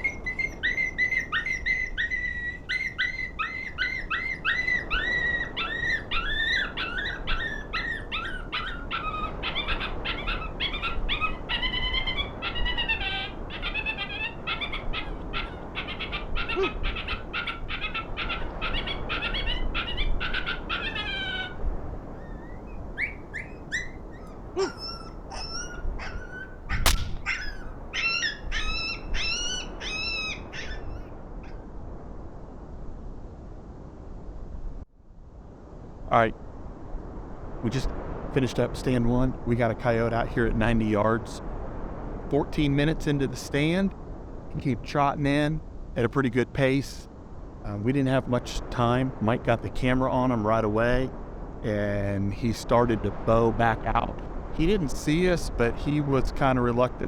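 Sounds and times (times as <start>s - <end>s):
electronic coyote pup whimpers: 0.0s - 31.6s
wind noise on microphone: 0.0s - 57.0s
sharp knock: 26.8s - 27.2s.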